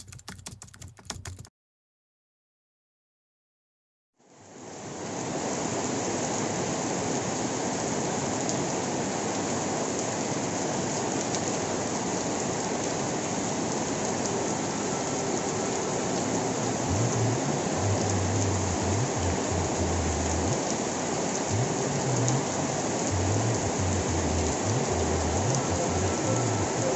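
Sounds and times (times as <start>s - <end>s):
steady rainfall: 4.2s - 26.9s
low tones: 16.8s - 20.8s, 21.4s - 26.9s.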